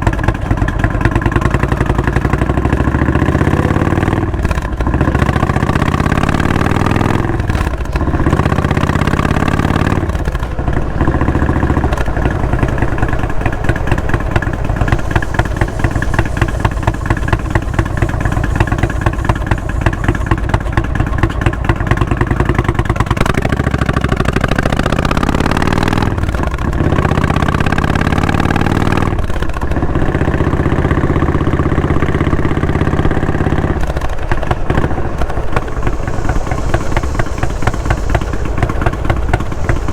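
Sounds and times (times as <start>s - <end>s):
motorcycle accelerating: 0.0s - 39.9s.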